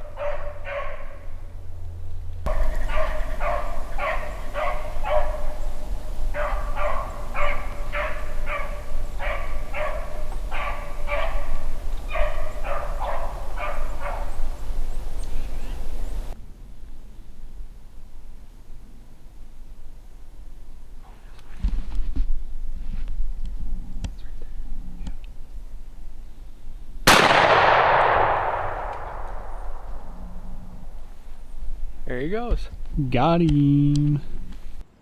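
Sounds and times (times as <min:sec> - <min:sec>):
beagle baying: 0:00.0 - 0:01.8, 0:02.5 - 0:16.3, 0:27.9 - 0:32.1
low rumble: 0:23.4 - 0:33.0.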